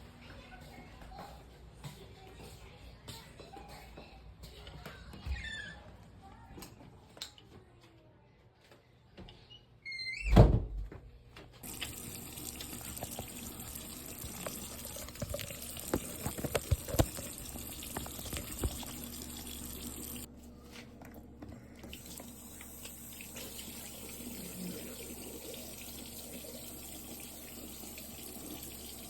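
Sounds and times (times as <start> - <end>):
tap water running into sink: 11.6 - 20.3, 21.8 - 29.0.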